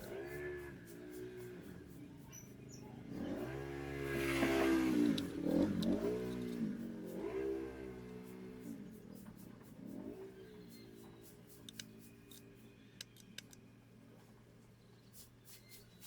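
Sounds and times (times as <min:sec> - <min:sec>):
vehicle engine revving: 0:00.0 - 0:12.6.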